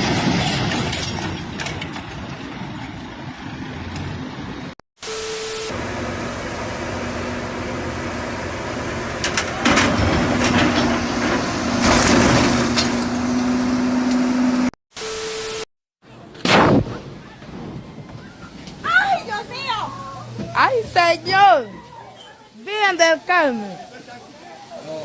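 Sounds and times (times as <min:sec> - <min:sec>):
loud bangs and crashes: 0:09.4 - 0:13.1
sharp falling whoosh: 0:16.4 - 0:18.6.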